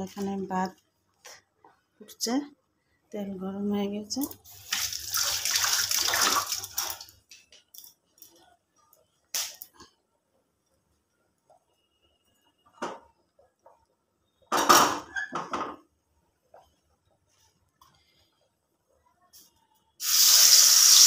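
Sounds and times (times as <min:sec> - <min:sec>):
rushing water hiss: 0:20.0 - 0:21.0.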